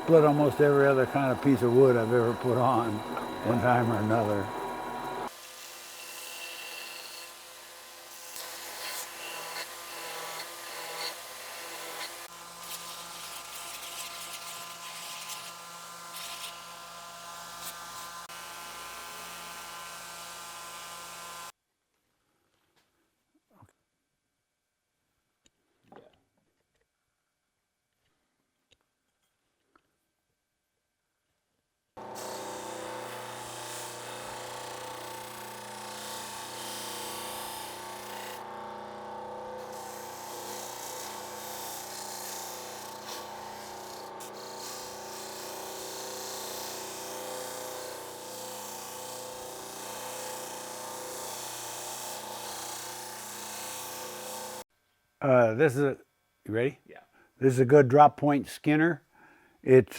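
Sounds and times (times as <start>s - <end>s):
small electric power tool rasping: 0.0s - 21.5s, 32.0s - 54.7s.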